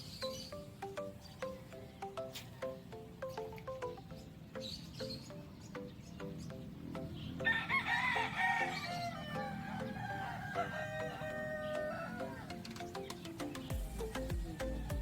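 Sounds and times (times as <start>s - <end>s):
background music repeating notes: 0.0s - 15.0s
rooster crowing: 7.4s - 12.6s.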